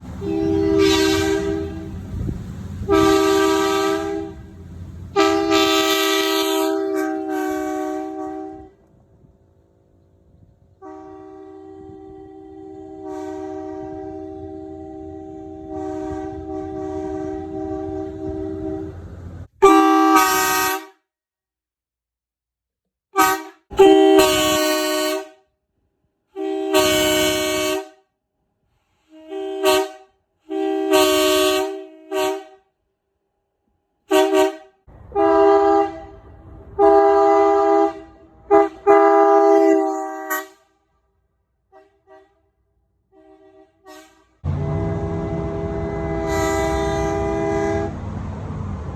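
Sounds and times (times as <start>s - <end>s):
truck horn blasts: 0.0s - 8.9s, 10.8s - 21.0s, 23.2s - 25.4s, 26.3s - 28.0s, 29.1s - 32.7s, 34.1s - 40.8s, 41.7s - 42.5s, 43.1s - 48.0s.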